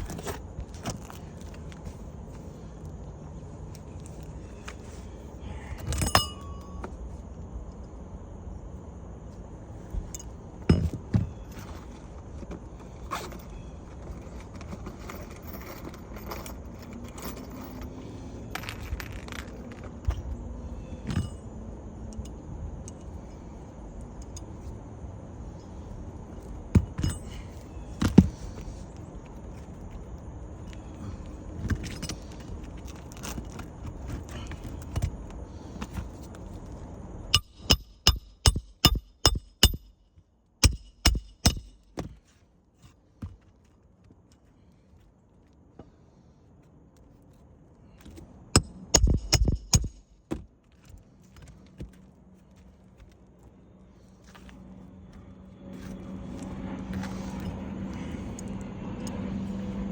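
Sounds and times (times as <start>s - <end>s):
asphalt shingles being worked: 0.0s - 6.1s, 9.7s - 21.6s, 24.4s - 59.9s
hand tools knocking and scraping: 10.7s - 13.4s, 37.4s - 40.0s, 40.6s - 43.5s, 48.0s - 52.0s.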